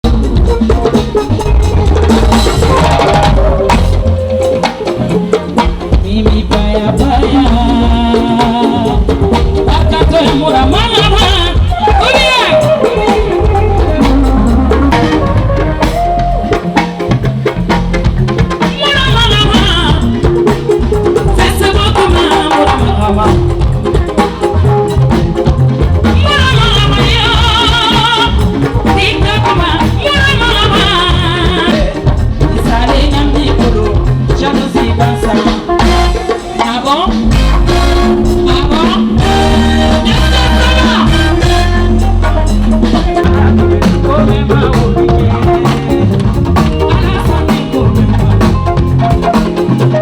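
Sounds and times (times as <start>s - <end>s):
person singing: 5.9s - 15.2s, 21.2s - 23.8s, 26.0s - 49.3s.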